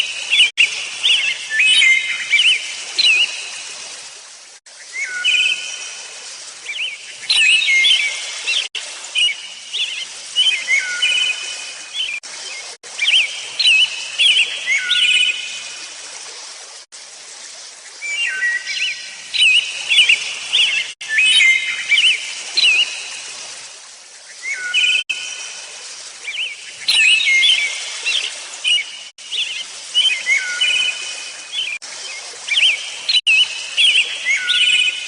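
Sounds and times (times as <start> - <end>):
songbirds whistling: 0.0 - 3.5, 4.8 - 5.8, 6.7 - 15.5, 18.0 - 23.2, 24.4 - 25.1, 26.3 - 35.0.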